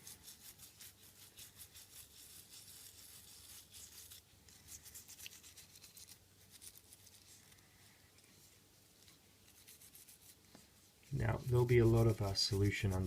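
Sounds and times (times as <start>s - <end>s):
toothbrush scrubbing circuit board: 0.0s - 7.2s.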